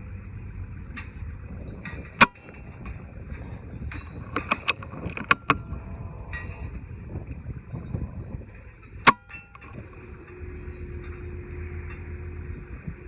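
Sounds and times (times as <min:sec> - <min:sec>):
wind rumble on microphone: 0:00.0 - 0:13.0
metallic clicks of rifle action: 0:03.9 - 0:05.8, 0:09.0 - 0:10.0.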